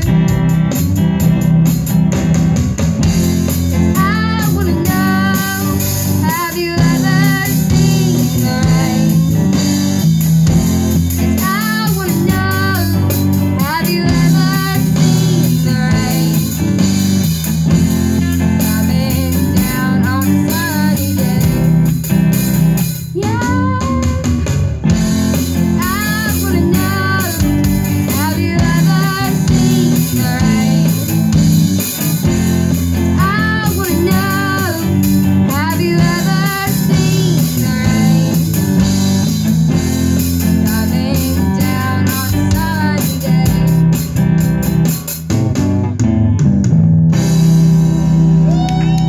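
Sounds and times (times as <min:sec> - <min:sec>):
person singing: 0:00.0 - 0:00.7, 0:03.7 - 0:10.0, 0:11.1 - 0:16.8, 0:18.2 - 0:22.1, 0:23.1 - 0:24.7, 0:25.4 - 0:31.6, 0:32.9 - 0:39.0, 0:40.4 - 0:44.2
drum kit beat: 0:00.0 - 0:49.0
guitar: 0:00.0 - 0:49.0.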